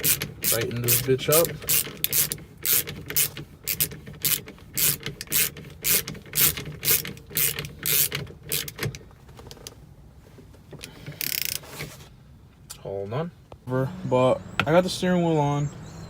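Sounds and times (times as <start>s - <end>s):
ratchet wrench clicking: 0.0s - 9.0s, 11.1s - 11.6s.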